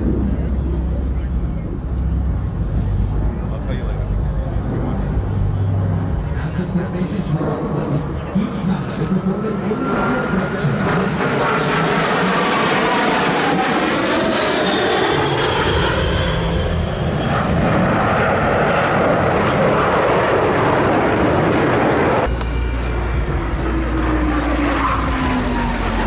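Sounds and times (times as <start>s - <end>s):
deep rumble: 0.0s - 9.0s, 15.5s - 26.0s
jets flying past: 8.6s - 26.0s.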